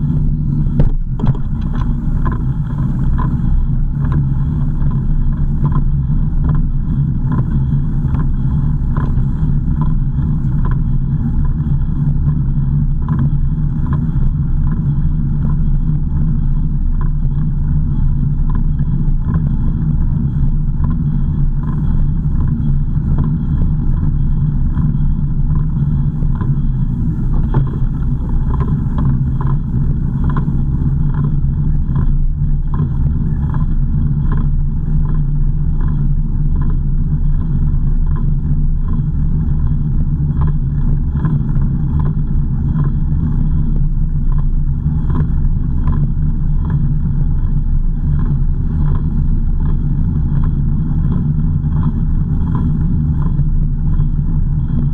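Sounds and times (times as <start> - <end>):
car engine and road noise: 0.0 - 54.9
faint regular ticks: 37.4 - 47.4.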